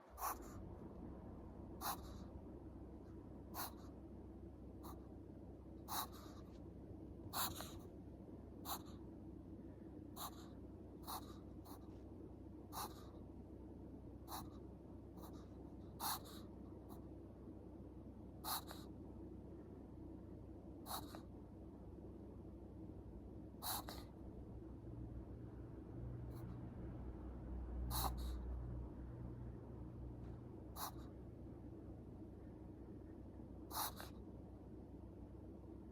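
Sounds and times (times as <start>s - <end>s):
dog reverse sneezing: 23.6s - 24.1s, 27.9s - 28.4s, 33.7s - 34.1s.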